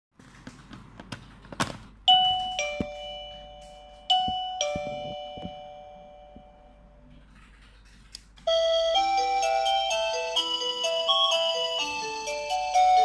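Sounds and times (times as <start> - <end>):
doorbell ding-dong chime: 2.1 - 6.8, 8.5 - 13.0.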